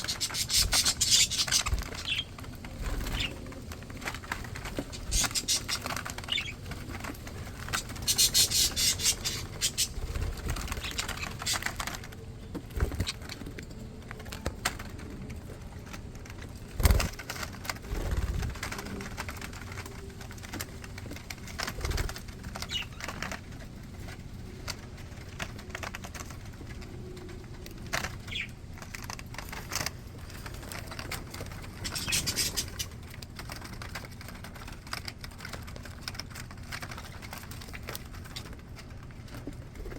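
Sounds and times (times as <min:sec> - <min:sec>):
rapid wing fluttering: 0:00.0 - 0:15.1, 0:15.8 - 0:24.2, 0:27.0 - 0:38.5.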